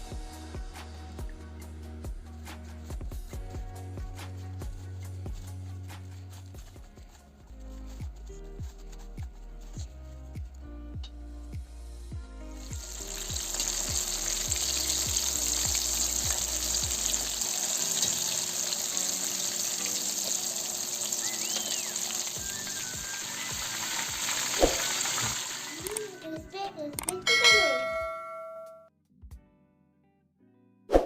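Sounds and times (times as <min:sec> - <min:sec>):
chicken wings frying in oil: 0:12.6 - 0:26.0.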